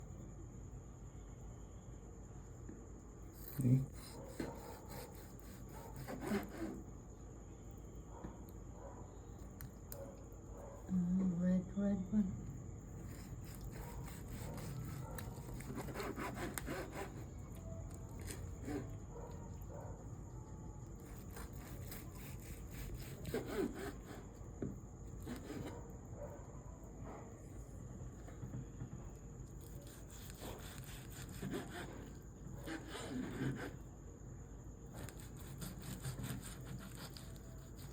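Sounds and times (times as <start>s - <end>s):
knife sawing through steak: 3.4s - 6.8s, 13.1s - 17.2s, 21.0s - 24.2s, 29.8s - 33.8s, 35.0s - 37.9s.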